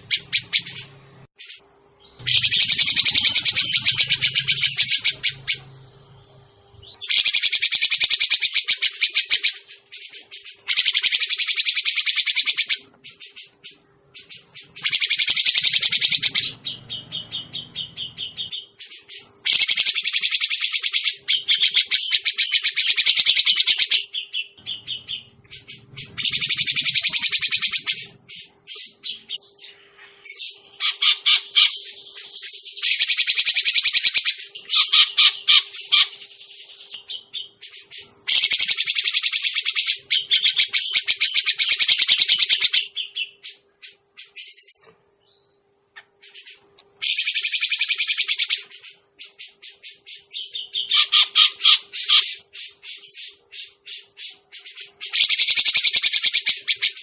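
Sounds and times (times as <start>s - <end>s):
bird chattering call: 0.0s - 5.8s, 6.8s - 13.5s, 14.2s - 44.8s, 46.0s - 57.0s.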